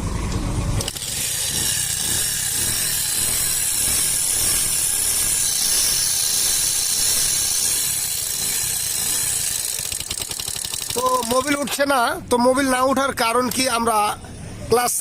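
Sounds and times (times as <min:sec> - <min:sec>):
motorcycle engine rasping rattle: 0:00.4 - 0:12.0.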